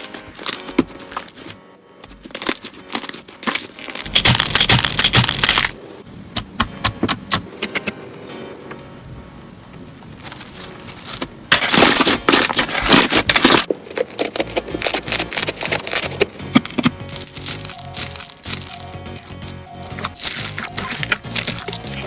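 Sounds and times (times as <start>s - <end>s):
soft background music: 0.0s - 5.2s, 5.8s - 22.0s
slime crackling and popping: 2.2s - 5.8s, 11.0s - 22.0s.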